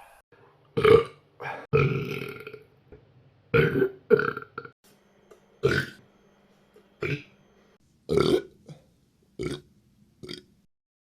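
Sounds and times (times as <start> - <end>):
man burping: 0.8 - 2.6.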